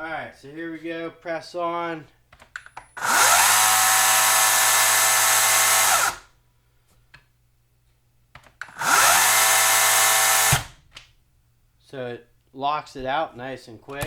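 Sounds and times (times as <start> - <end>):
cordless chainsaw whining: 3.0 - 6.3, 8.7 - 10.8.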